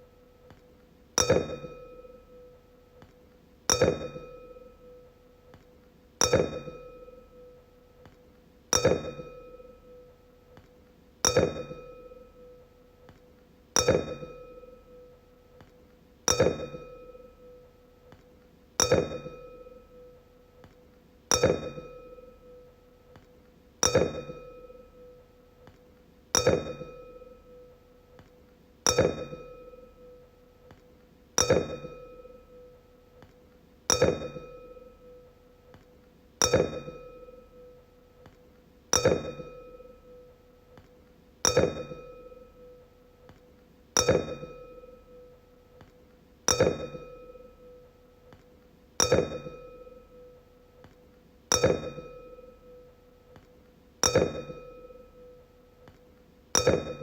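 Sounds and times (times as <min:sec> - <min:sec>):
wine glass clinking and ringing: 0:46.5 - 0:47.6, 0:49.0 - 0:50.2, 0:51.5 - 0:52.8, 0:54.0 - 0:55.2.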